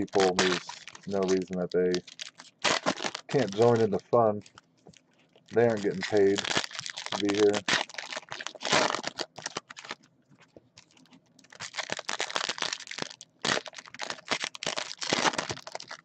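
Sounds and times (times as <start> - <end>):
foil wrappers tearing and crinkling: 0.0 - 4.6, 5.5 - 10.0, 10.8 - 16.0.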